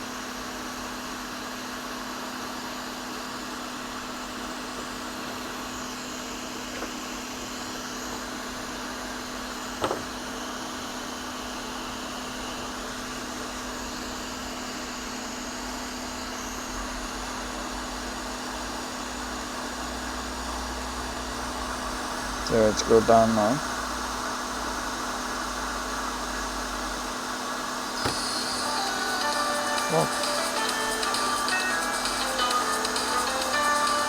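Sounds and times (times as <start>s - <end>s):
hot air station blowing: 26.9s - 34.0s.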